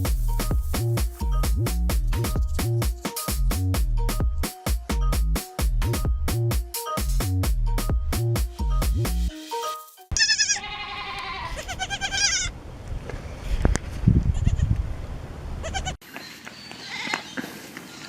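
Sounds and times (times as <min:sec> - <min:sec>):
young goat bleating: 0:10.1 - 0:12.5, 0:14.3 - 0:14.8, 0:15.6 - 0:16.0.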